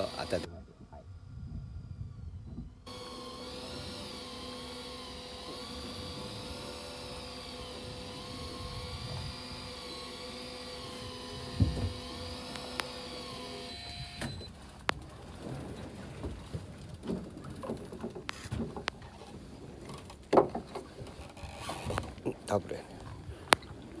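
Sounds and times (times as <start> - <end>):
fishing reel motor whine: 0.0 - 14.6, 21.1 - 22.2
sharp clicks: 5.4 - 15.0.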